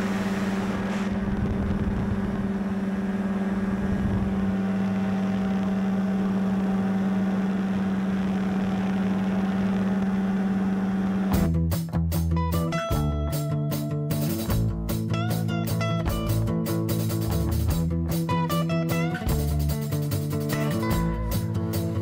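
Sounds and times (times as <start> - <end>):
paramotor engine and propeller: 0.0 - 11.5.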